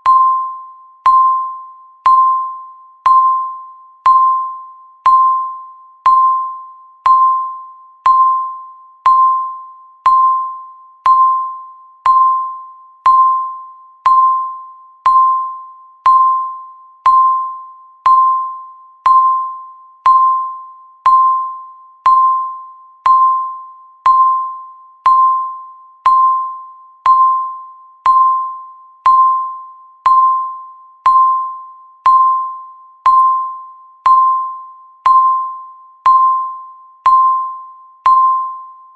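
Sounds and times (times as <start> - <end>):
countdown timer beeps: 0.0 - 38.9.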